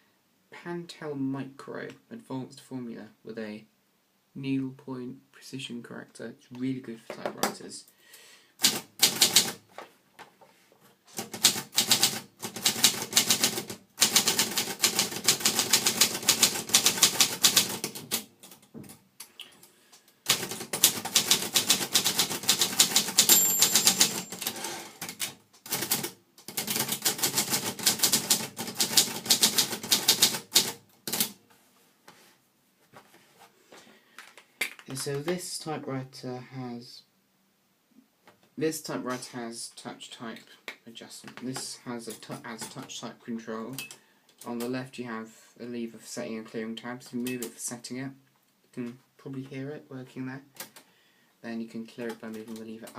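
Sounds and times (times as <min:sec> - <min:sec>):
typewriter bell ring: 0:23.0 - 0:24.7.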